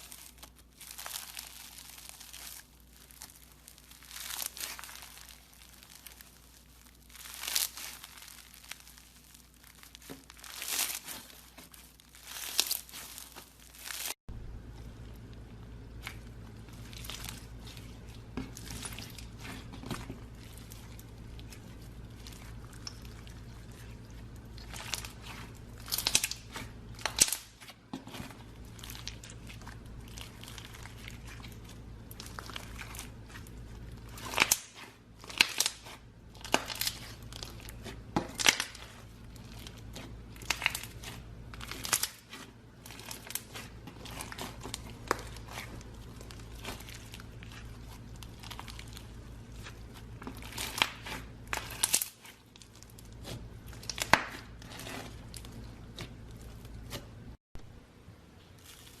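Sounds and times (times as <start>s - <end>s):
brittle material crunching: 0.0s - 57.4s, 58.6s - 59.0s.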